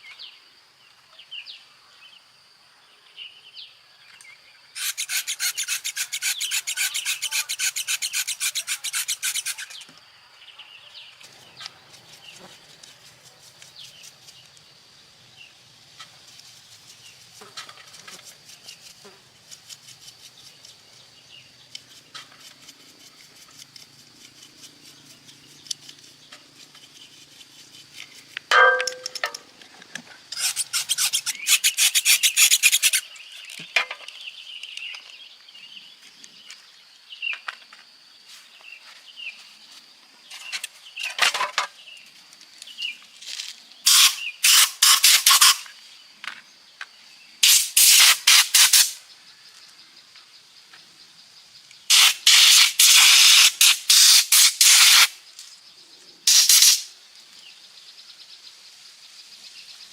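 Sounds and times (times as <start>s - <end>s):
hand scraping strokes: 4.8s - 9.9s, 16.0s - 21.0s, 21.7s - 28.5s, 30.4s - 33.1s.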